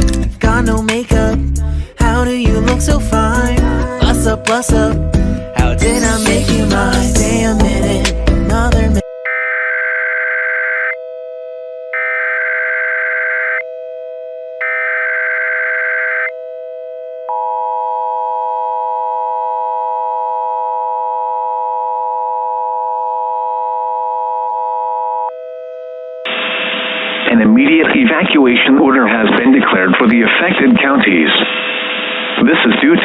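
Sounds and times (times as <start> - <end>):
buzzing data bursts: 3.3 - 9.0
two-tone attention signal: 5.2 - 8.1.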